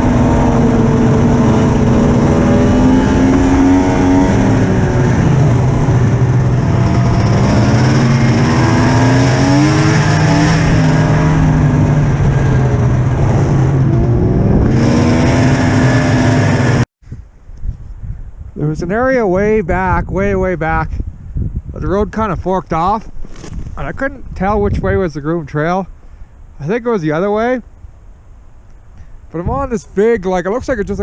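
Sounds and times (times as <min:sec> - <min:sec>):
snowmobile engine revving: 0:00.0 - 0:16.8.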